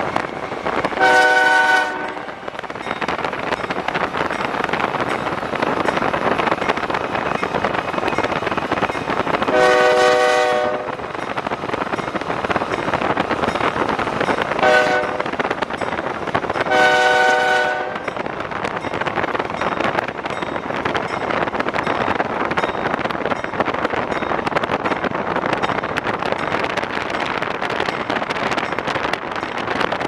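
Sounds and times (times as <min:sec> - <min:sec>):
rushing noise of moving train: 0:00.0 - 0:30.0
locomotive air horn blasts: 0:01.0 - 0:02.4, 0:09.5 - 0:11.0, 0:14.6 - 0:15.3, 0:16.7 - 0:18.0.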